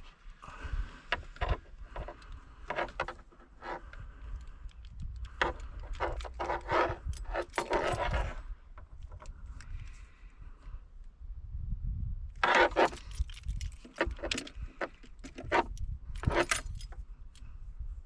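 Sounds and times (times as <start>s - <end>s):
small parts clicking and rattling: 1.1s - 10.0s, 12.4s - 17.5s
keys jangling: 1.9s - 8.3s, 12.4s - 17.4s.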